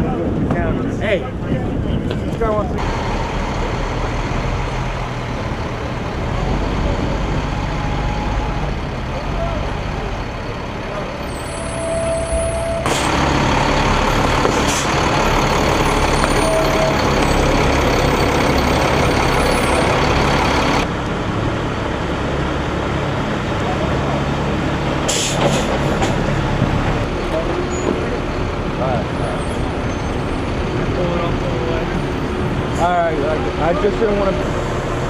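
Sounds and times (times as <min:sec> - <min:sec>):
heavy truck engine idling: 0:02.8 - 0:35.0
air hissing: 0:25.1 - 0:25.8.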